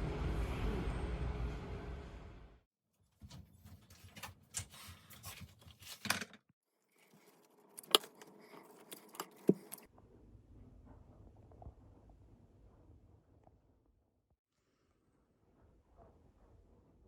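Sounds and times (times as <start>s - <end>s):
objects clicking and rustling: 3.2s - 6.4s, 7.0s - 9.9s.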